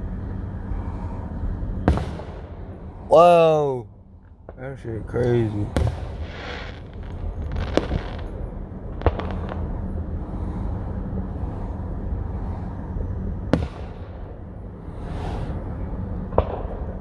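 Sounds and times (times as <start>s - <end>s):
steady low rumble: 0.0s - 17.0s
fireworks bangs: 1.8s - 3.8s, 4.4s - 11.1s, 13.5s - 17.0s.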